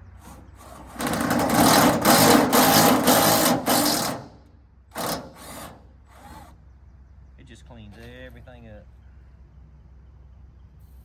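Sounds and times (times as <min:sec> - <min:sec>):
power driver whirring: 0:00.2 - 0:06.6.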